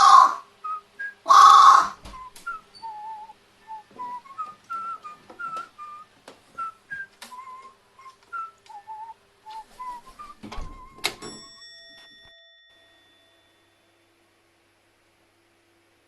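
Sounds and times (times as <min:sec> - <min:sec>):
crow cawing: 0:00.0 - 0:00.5, 0:01.3 - 0:02.0
bird sneezing: 0:01.3 - 0:02.0
soft wavering whistle-like notes: 0:02.1 - 0:11.2.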